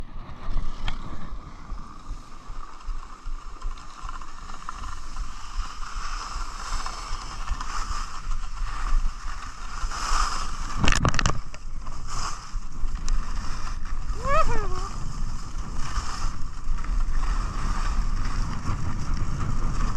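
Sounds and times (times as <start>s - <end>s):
skis scraping over snow: 0.0s - 19.9s
wind buffeting microphone: 7.1s - 19.9s.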